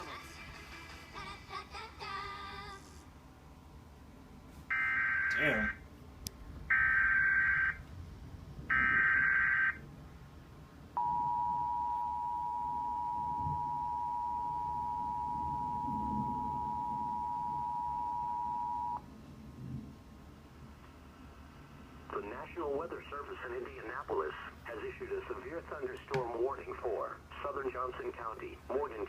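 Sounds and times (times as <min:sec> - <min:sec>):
two-tone attention signal: 0:11.0 - 0:19.0.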